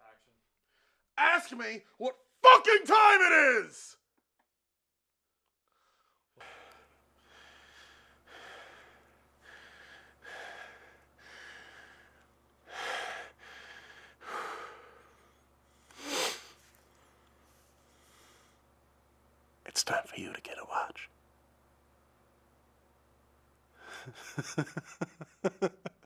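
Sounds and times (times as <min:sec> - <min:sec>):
person breathing hard: 0:05.7 - 0:16.7, 0:23.8 - 0:24.4
low steady hum: 0:06.4 - 0:26.0.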